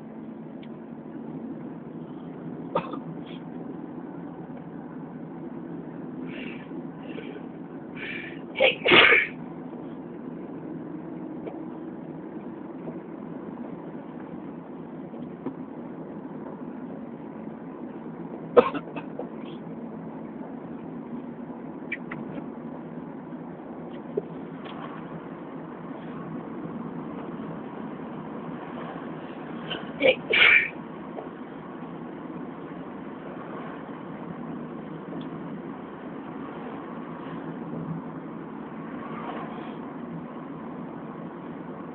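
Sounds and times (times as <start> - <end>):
low background hum: 0.0 - 41.9
person sneezing: 8.0 - 9.4, 29.7 - 30.7.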